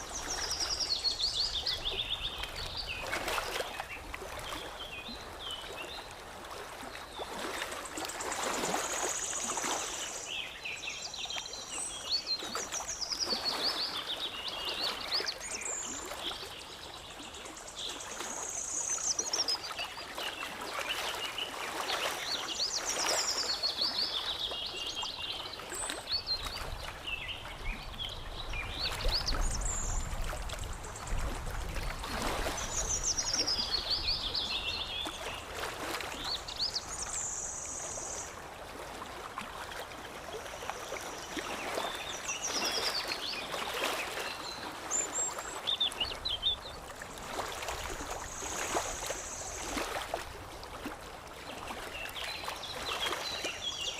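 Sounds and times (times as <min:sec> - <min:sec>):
water lapping and trickling: 0:00.0 - 0:53.9
songbirds singing trills: 0:32.4 - 0:38.3.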